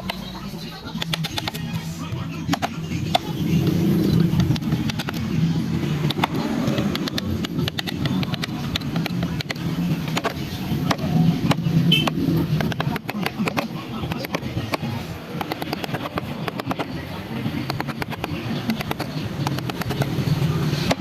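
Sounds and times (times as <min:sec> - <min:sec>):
sharp clicks and taps: 0:00.9 - 0:01.7, 0:02.4 - 0:16.9, 0:17.6 - 0:21.0.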